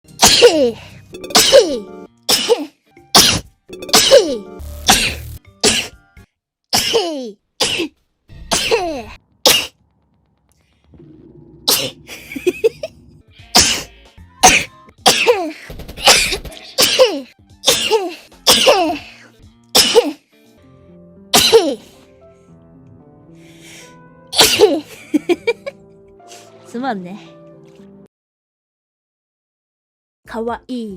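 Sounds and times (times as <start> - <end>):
woman sneezing: 24.4 - 24.8.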